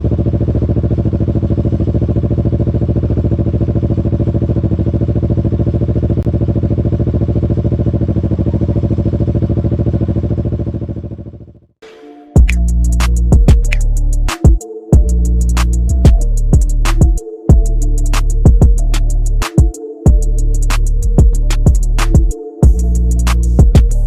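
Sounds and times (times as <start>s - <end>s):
motorcycle engine idling: 0.0s - 11.8s, 15.0s - 19.4s, 20.1s - 24.0s
music with drum hits: 11.8s - 24.0s.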